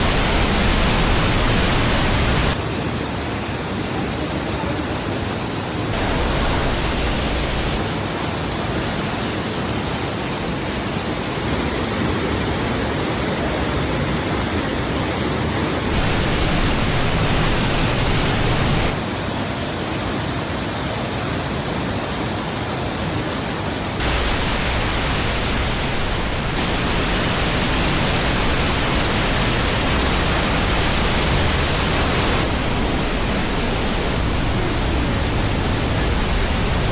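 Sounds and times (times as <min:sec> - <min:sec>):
waterfall roaring: 0:00.0 - 0:02.6, 0:04.3 - 0:08.0, 0:15.9 - 0:19.0, 0:23.6 - 0:36.9.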